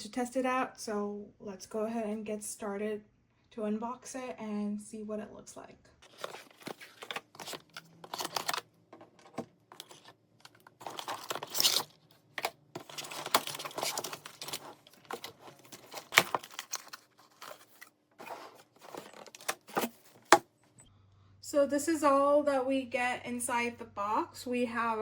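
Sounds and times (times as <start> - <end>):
packaging tearing and crinkling: 6.0 - 8.6, 9.2 - 20.4
clicks and knocks of parts: 6.0 - 17.9.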